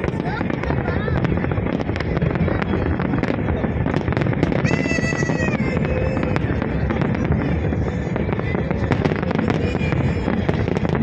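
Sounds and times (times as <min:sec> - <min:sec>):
fireworks crackling: 0:00.0 - 0:11.0.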